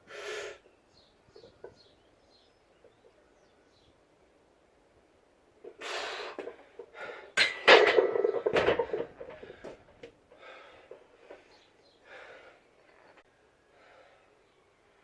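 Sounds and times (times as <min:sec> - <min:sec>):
person breathing hard: 0:09.4 - 0:12.8, 0:13.6 - 0:14.5.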